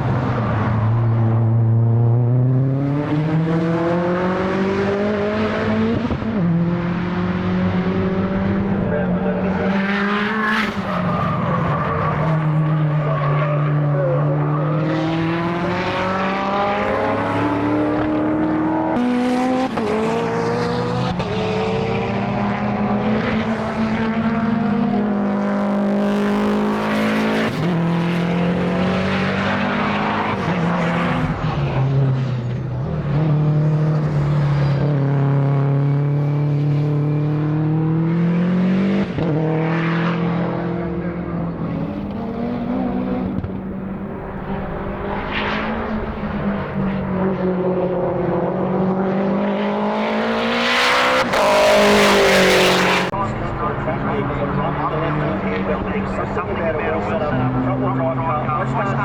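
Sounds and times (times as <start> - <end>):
race car engine revving: 0.0 - 59.0.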